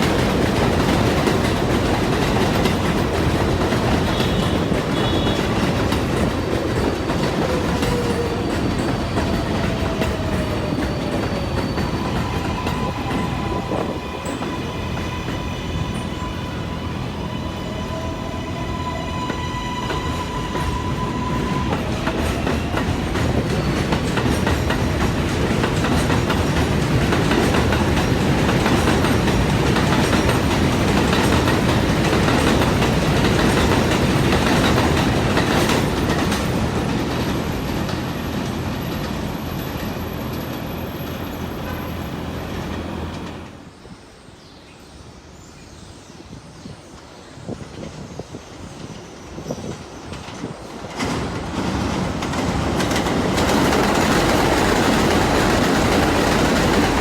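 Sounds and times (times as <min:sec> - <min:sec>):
train wheels clacking on rails: 0:00.0 - 0:43.6, 0:46.9 - 0:57.0
wheel squeal: 0:04.1 - 0:24.7.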